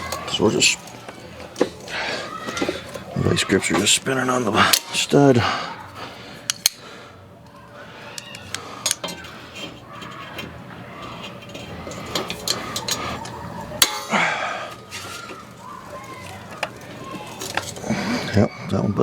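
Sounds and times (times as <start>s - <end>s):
vise grips clicking on metal: 8.1s - 14.2s.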